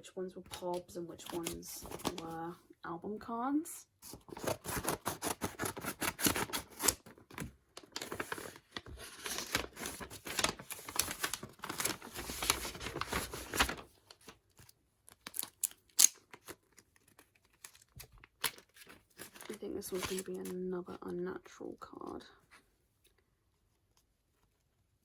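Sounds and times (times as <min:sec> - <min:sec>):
packaging crinkling and tearing: 0:04.3 - 0:20.4.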